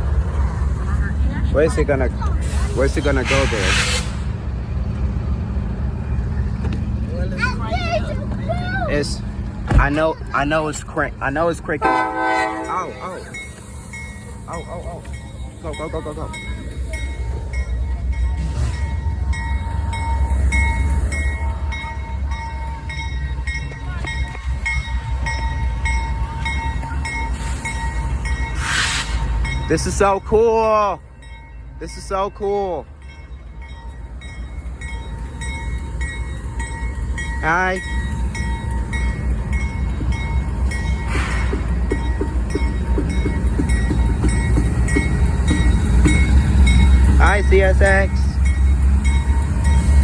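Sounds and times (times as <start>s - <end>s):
diesel locomotives rumbling: 0.0s - 50.0s
crossing bell dinging: 9.0s - 50.0s
train wheels clicking on rail joints: 12.5s - 30.3s, 33.2s - 50.0s.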